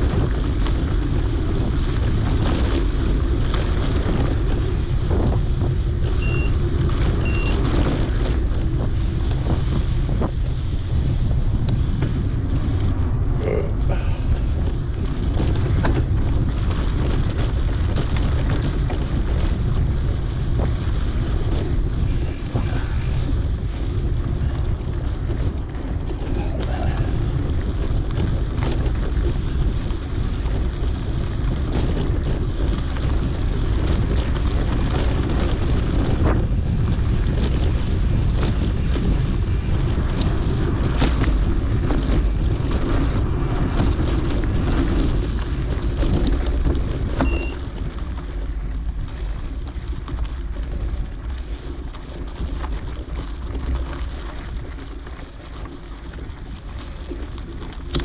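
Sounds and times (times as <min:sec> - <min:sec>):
bike clicks and rattles: 0:00.0 - 0:58.0
wind rushing over microphone: 0:00.0 - 0:58.0
short high beep: 0:06.2 - 0:06.6, 0:07.2 - 0:07.6, 0:47.2 - 0:47.6.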